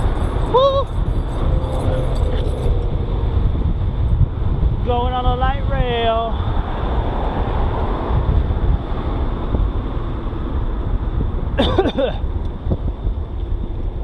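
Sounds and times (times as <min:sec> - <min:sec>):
wind buffeting microphone: 0:00.0 - 0:14.0
brief wavering high-pitched sound: 0:00.4 - 0:03.3.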